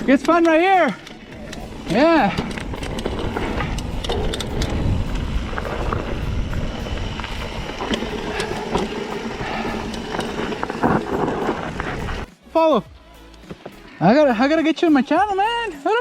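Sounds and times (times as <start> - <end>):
bike clicks and rattles: 0.0 - 12.3
bike tyre noise on dirt: 0.0 - 12.3
wind rumbling on microphone: 1.2 - 12.3.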